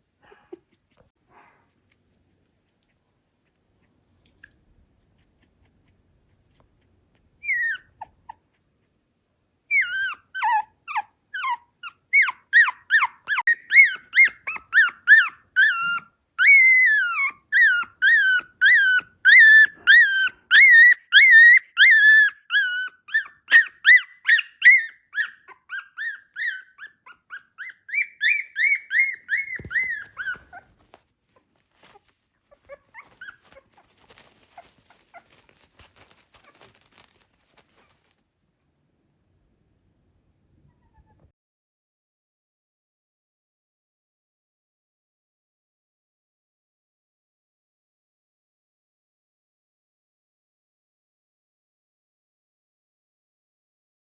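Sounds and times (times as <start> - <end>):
puppy whining: 7.4 - 8.6, 9.7 - 38.1, 40.7 - 41.3.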